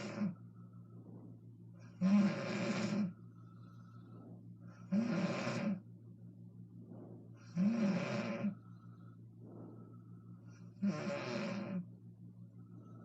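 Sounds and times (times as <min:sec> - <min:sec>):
woman snoring: 0:00.0 - 0:00.4, 0:01.9 - 0:03.2, 0:04.9 - 0:05.8, 0:07.4 - 0:08.7, 0:10.6 - 0:11.9
quiet breathing: 0:00.0 - 0:13.0.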